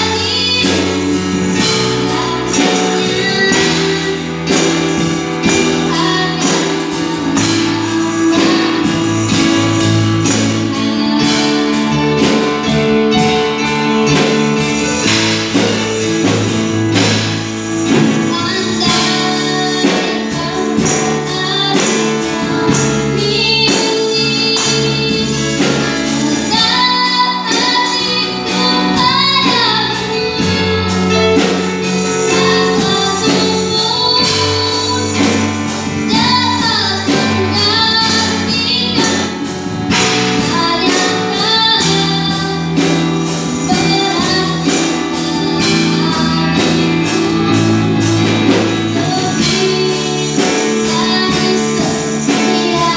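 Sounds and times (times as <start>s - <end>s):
bass line: 0.0s - 52.9s
person singing: 0.0s - 52.9s
percussion beat: 11.4s - 28.8s.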